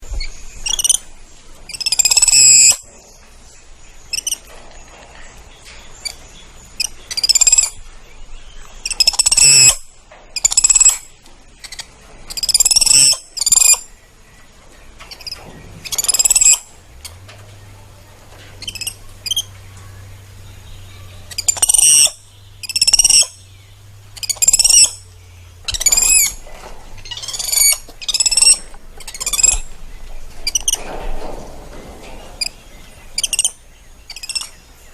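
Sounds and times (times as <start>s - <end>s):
monkey shrill squeaky calls: 1.7s - 2.8s, 8.8s - 9.8s, 11.6s - 13.8s, 15.2s - 16.6s, 18.6s - 19.5s, 21.3s - 23.4s, 24.2s - 25.0s, 25.7s - 26.4s, 27.0s - 29.6s, 33.2s - 33.5s, 34.1s - 34.5s.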